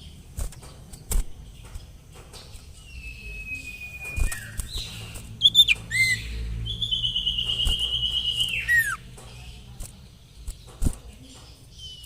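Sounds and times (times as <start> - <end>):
bird singing whistles: 2.8 - 9.0.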